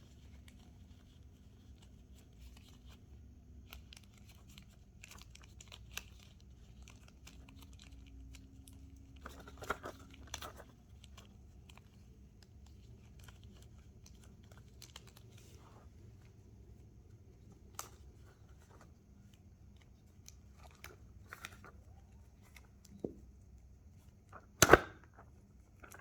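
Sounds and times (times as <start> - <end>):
balloons rustling and clicking: 24.3 - 26.0.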